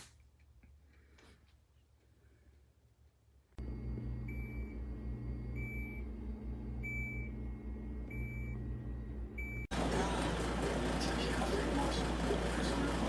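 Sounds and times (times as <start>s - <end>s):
electrical hum: 3.6s - 13.0s.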